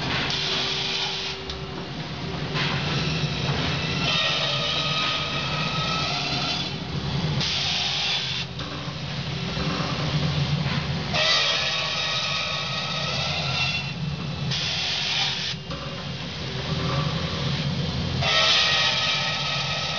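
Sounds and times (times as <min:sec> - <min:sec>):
circular saw motor hum: 0:00.0 - 0:08.7.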